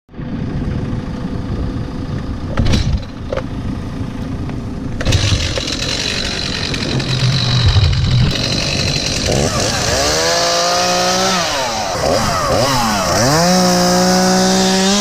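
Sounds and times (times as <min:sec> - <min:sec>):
diesel engine running: 0:00.1 - 0:14.4.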